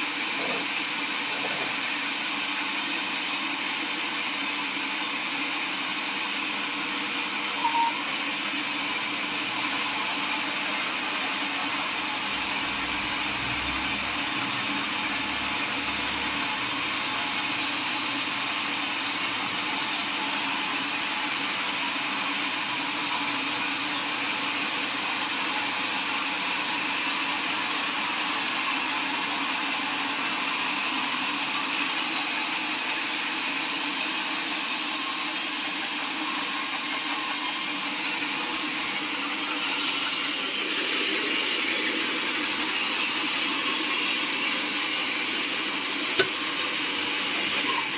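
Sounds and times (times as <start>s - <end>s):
sawmill saw whirring hum: 0.0s - 47.9s
short tone: 7.6s - 8.1s.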